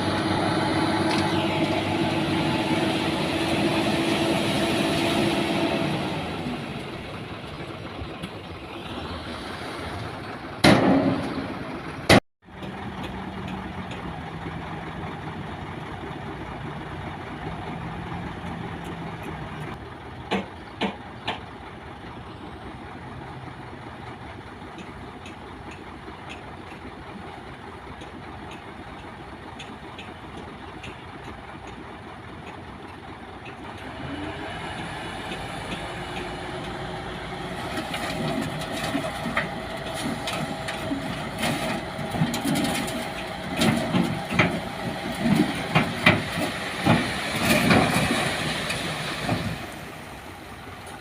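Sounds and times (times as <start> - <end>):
diesel construction machinery running: 0.0 - 51.0
metallic clanks and knocks: 10.6 - 14.0.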